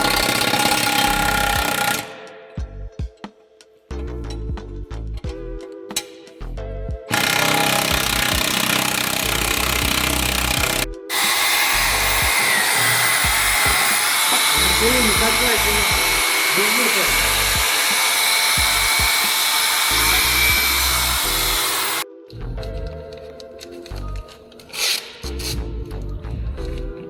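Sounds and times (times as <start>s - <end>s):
power tool whining: 0.0s - 2.2s, 7.1s - 22.0s.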